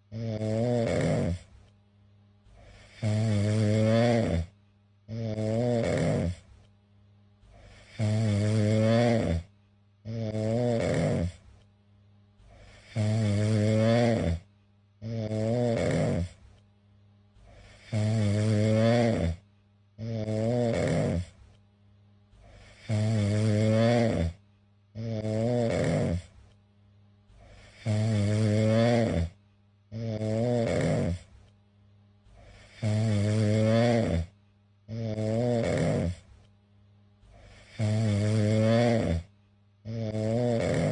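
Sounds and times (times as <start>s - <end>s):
cat snoring: 0.0s - 1.6s, 2.5s - 6.5s, 7.4s - 9.5s, 10.1s - 11.6s, 12.4s - 16.5s, 17.4s - 19.4s, 20.0s - 21.5s, 22.4s - 24.4s, 25.0s - 26.4s, 27.4s - 31.4s, 32.3s - 36.4s, 37.2s - 40.9s.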